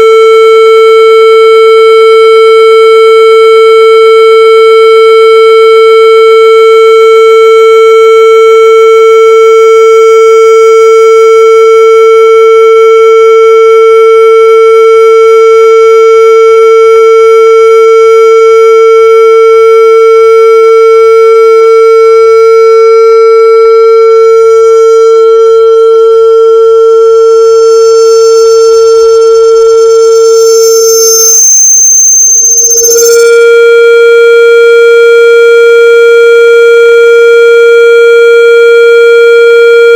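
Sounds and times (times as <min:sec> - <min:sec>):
loudspeaker feedback screech: 0:27.4 - 0:33.7.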